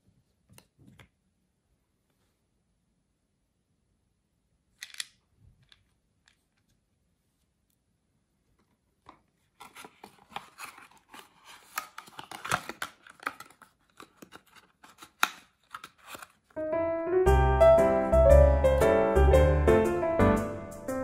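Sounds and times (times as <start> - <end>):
piano music: 16.6 - 21.0.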